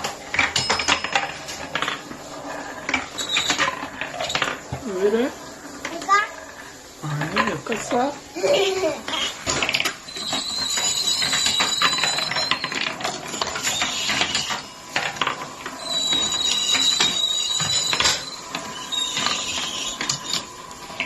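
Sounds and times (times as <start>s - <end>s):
thin high ringing tone: 0.0s - 4.6s, 9.2s - 21.0s
marbles clattering down wooden track: 0.0s - 21.0s.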